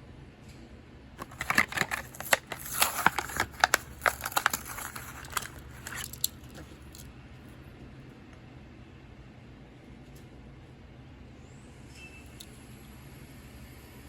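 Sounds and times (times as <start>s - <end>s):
plastic packaging crackling: 1.2s - 7.0s.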